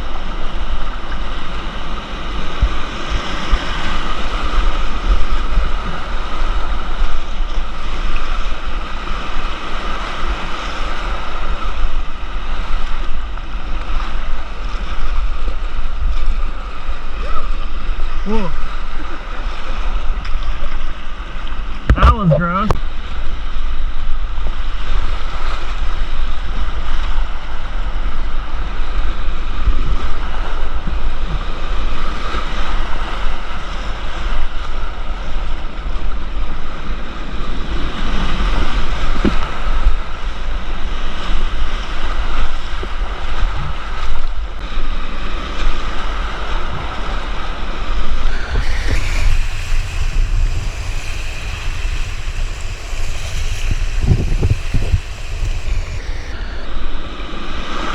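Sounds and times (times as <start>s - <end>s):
rushing whitewater: 48.3s - 56.7s
wind buffeting microphone: 48.3s - 56.7s.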